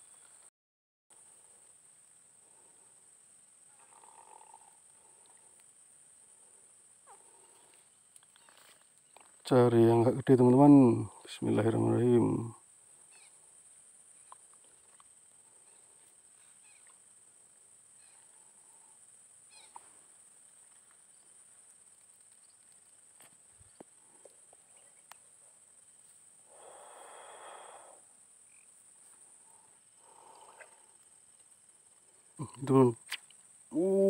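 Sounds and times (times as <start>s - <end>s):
soft rustle: 19.6s - 26.4s.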